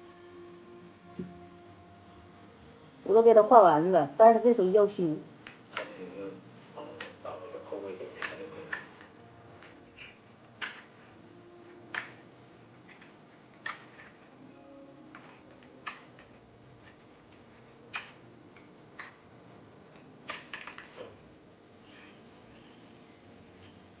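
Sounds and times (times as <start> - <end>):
small tools clicking and tapping: 12.8 - 14.2, 15.1 - 17.1, 17.9 - 19.2, 19.9 - 21.1.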